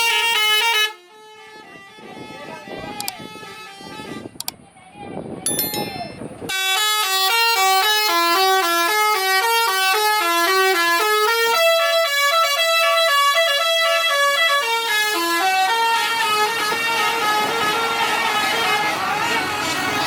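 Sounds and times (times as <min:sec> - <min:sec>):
multi-tone bus horn melody: 0:00.0 - 0:02.5, 0:06.5 - 0:20.0.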